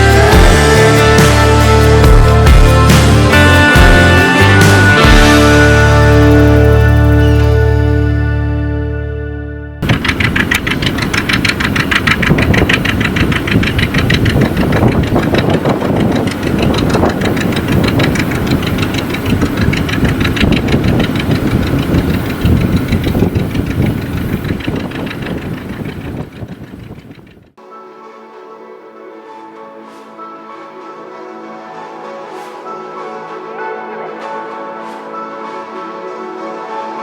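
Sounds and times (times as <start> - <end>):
tractor engine running: 0.0 - 8.6, 9.8 - 27.6.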